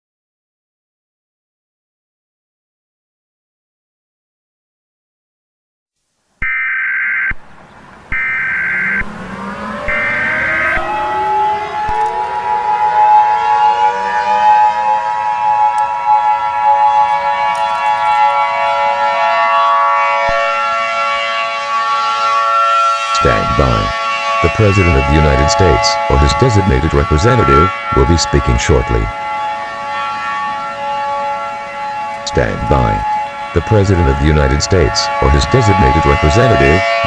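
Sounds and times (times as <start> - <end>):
sirens winding up: 6.4 - 37.0
alert data tones: 8.1 - 12.2.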